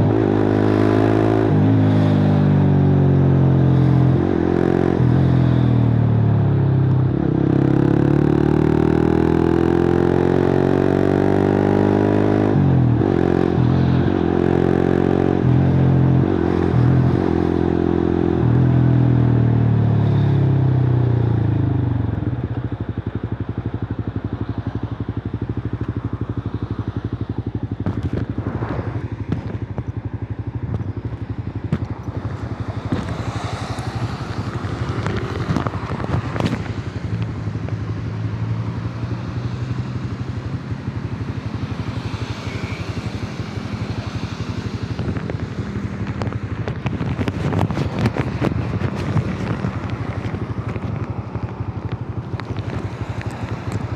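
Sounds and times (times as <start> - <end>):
motorcycle engine revving: 0.0 - 53.9
exhaust crackle: 27.3 - 38.1, 40.9 - 53.9.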